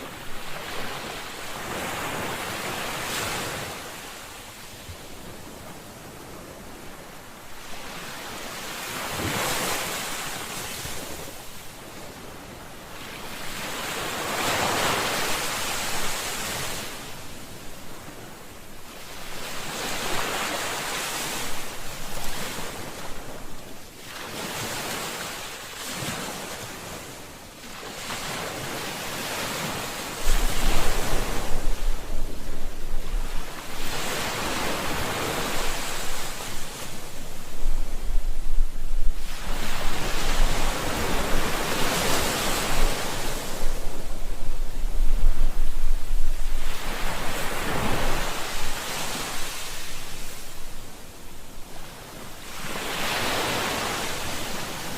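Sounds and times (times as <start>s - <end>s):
ocean waves breaking on shore: 0.0s - 54.9s
wind buffeting microphone: 29.5s - 50.9s.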